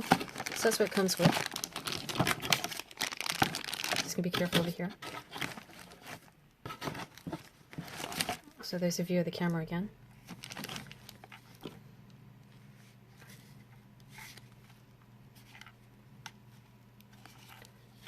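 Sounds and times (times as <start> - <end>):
steady low hum: 7.4 - 18.0.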